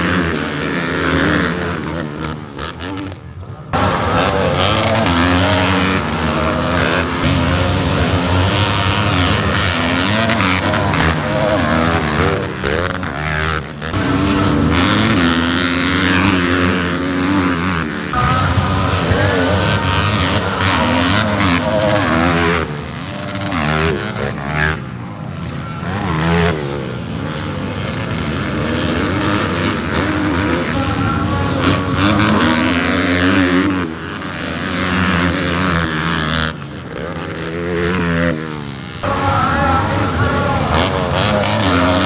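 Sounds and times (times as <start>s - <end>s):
dirt bike engines revving: 0.0s - 42.0s
low steady engine drone: 3.1s - 34.5s.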